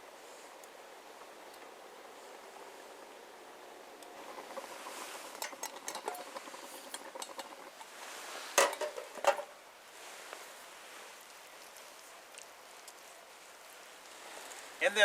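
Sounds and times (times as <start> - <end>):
metal utensil scraping cooking pot: 4.2 - 9.5.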